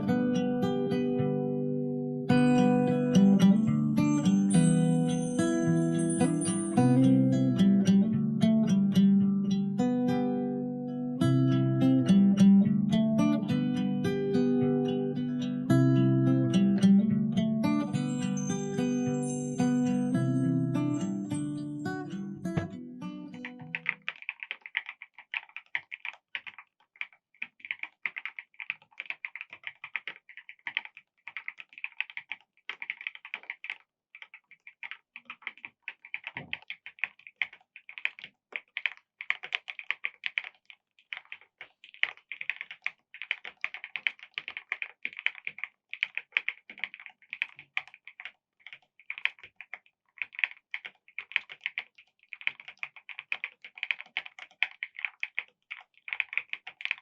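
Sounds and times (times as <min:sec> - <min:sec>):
mechanical keyboard typing: 0:18.2 - 0:57.0.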